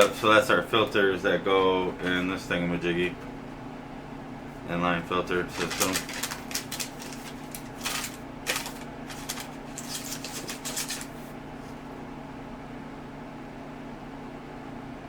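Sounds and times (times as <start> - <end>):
packaging crinkling and rustling: 5.5 - 11.3.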